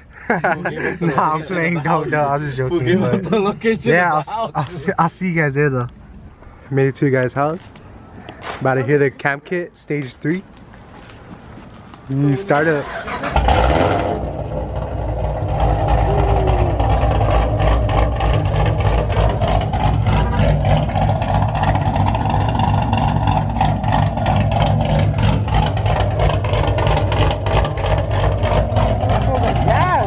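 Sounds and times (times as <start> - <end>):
car engine idling lumpily: 10.2 - 30.0.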